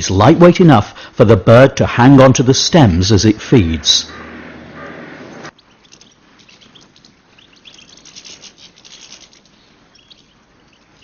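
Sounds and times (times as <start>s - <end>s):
finches twittering: 9.3s - 11.0s.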